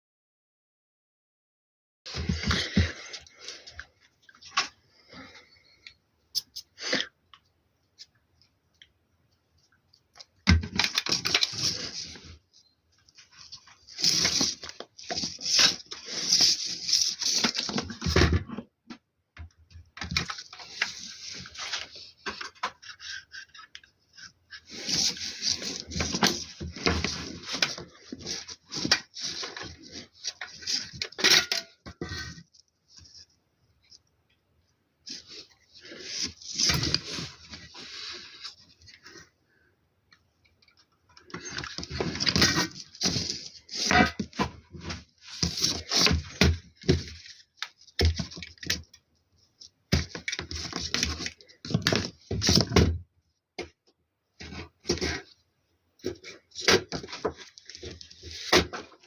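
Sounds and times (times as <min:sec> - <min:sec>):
hard objects rattling and scraping: 0:10.5 - 0:12.4, 0:13.2 - 0:18.6, 0:20.0 - 0:32.4, 0:41.2 - 0:47.3
crackling crumpling rustle: 0:10.8 - 0:18.2, 0:20.2 - 0:31.2, 0:35.1 - 0:39.7.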